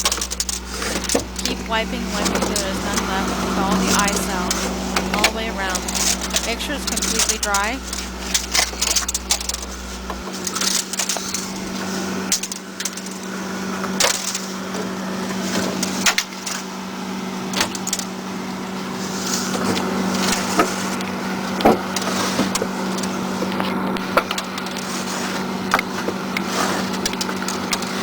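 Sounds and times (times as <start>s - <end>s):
steady low hum: 0.0s - 12.3s.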